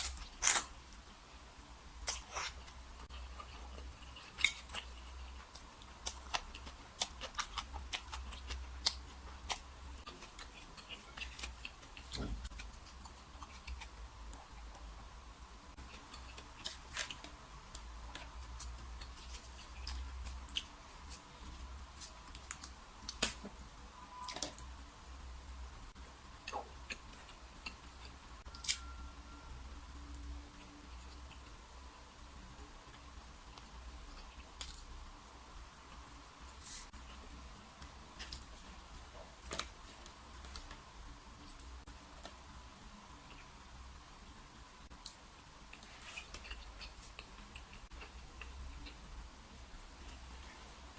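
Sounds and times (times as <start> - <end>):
chewing: 2.0 - 14.7, 45.0 - 49.1.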